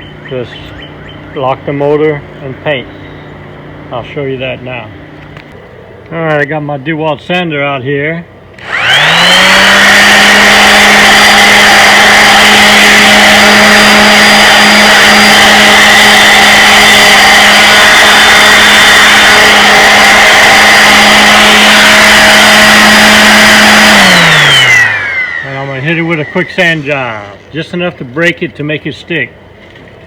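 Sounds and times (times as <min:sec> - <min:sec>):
electric sander running: 0:08.6 - 0:27.5.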